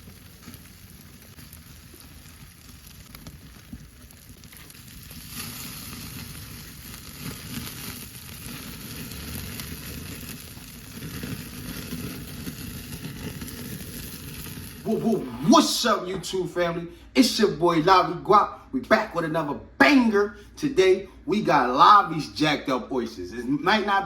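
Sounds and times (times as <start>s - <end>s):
oysters sizzling on a grill: 0.0s - 15.9s.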